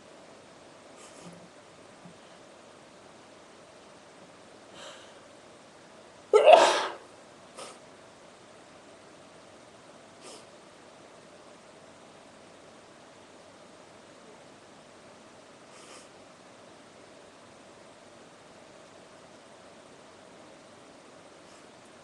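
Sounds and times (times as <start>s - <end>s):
woman sneezing: 6.4s - 7.0s.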